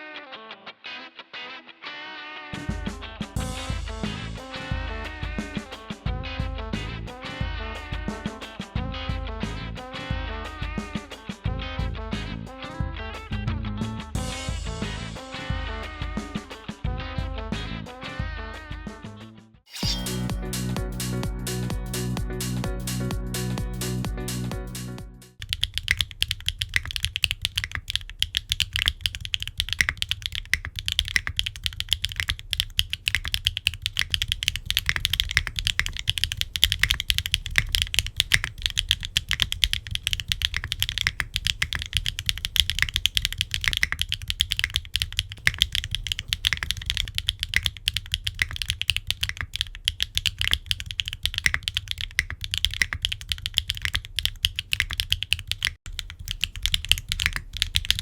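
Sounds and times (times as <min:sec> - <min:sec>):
mechanical keyboard typing: 0:25.4 - 0:58.0.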